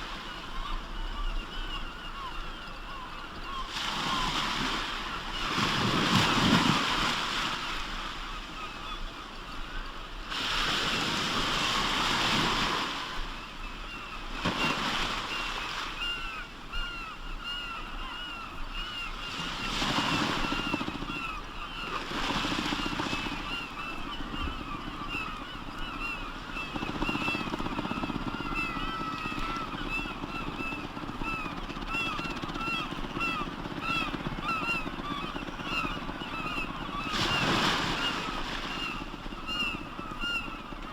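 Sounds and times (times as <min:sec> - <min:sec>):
waves breaking: 0:03.6 - 0:08.6, 0:10.2 - 0:13.3, 0:14.3 - 0:16.4, 0:19.3 - 0:40.4.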